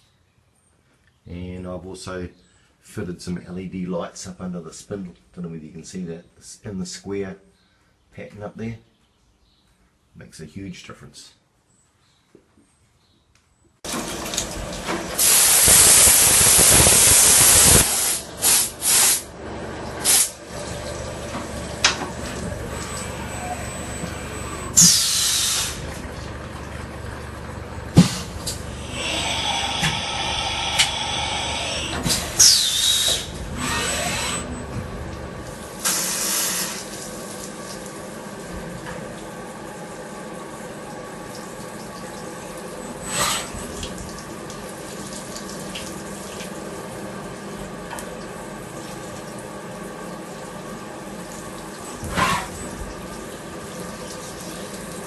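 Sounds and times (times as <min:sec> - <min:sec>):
milling machine hissing bursts: 0:15.1 - 0:19.4, 0:20.0 - 0:20.4, 0:22.6 - 0:25.9, 0:27.9 - 0:34.6, 0:35.6 - 0:37.0, 0:42.9 - 0:43.7
machine whirring: 0:27.2 - 0:36.8.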